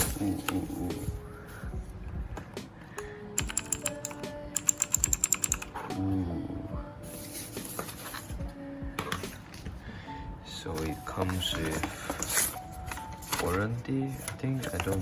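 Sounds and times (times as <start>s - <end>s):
background music: 0.0s - 15.0s
keyboard keys clicking rapidly: 3.4s - 5.8s.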